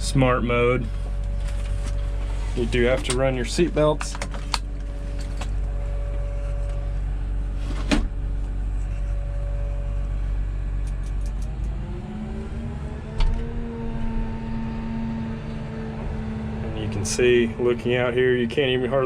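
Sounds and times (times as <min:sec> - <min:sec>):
sharp click: 0:10.8 - 0:11.8
excavator diesel engine idling: 0:16.0 - 0:19.0.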